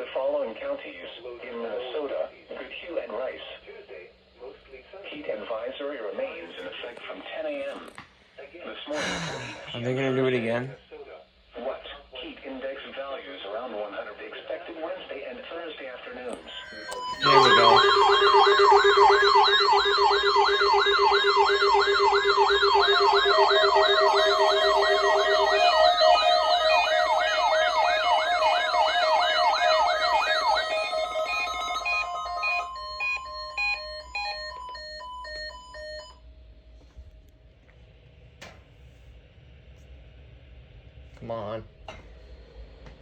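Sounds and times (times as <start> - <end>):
alarm on-off beeps: 16.4 - 36.2
warbling weather alert siren: 16.4 - 36.2.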